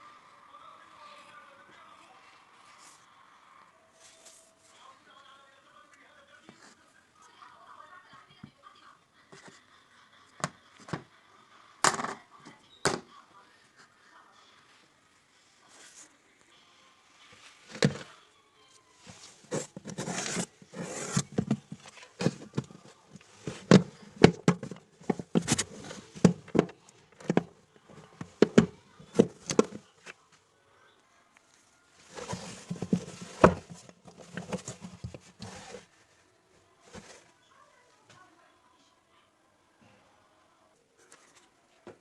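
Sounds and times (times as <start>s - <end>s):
rustling: 17.2s - 30.2s, 31.5s - 37.4s
scraping: 19.0s - 30.1s, 32.0s - 35.9s.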